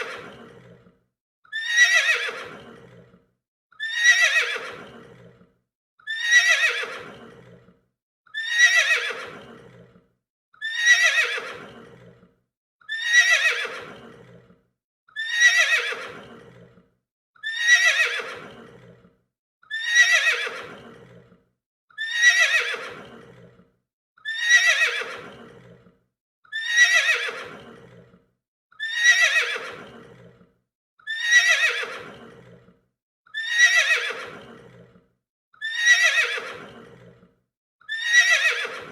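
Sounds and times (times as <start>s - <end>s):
horse whinnying: 0.0s - 0.8s, 1.5s - 3.1s, 3.8s - 5.4s, 6.1s - 7.6s, 8.3s - 10.0s, 10.6s - 12.2s, 12.9s - 14.4s, 15.2s - 16.7s, 17.4s - 19.0s, 19.7s - 21.2s, 22.0s - 23.5s, 24.2s - 25.8s, 26.5s - 28.1s, 28.8s - 30.4s, 31.1s - 32.6s, 33.4s - 34.9s, 35.6s - 37.2s, 37.9s - 38.9s.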